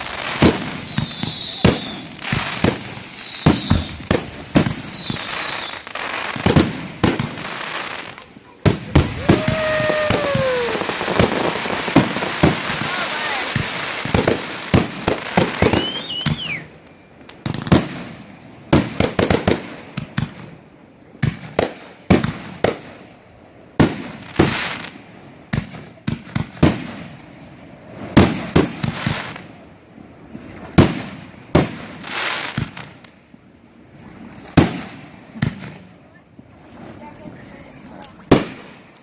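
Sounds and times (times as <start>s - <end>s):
fireworks crackling: 0.0s - 39.0s
fireworks shells bursting: 8.9s - 16.6s.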